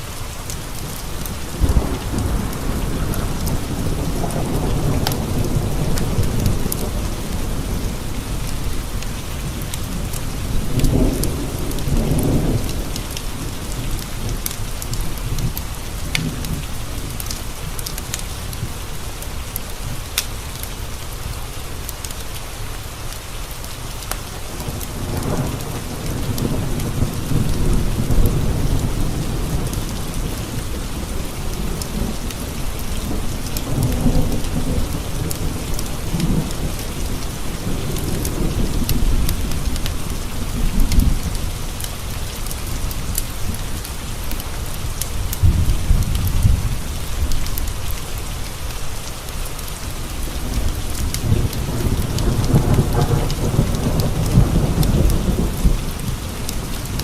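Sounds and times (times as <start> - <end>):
fireplace fire crackling: 0.0 - 28.0
rain against window glass: 0.0 - 57.0
low thunder rolls: 1.2 - 17.3, 24.6 - 41.7, 45.2 - 48.0, 49.9 - 57.0.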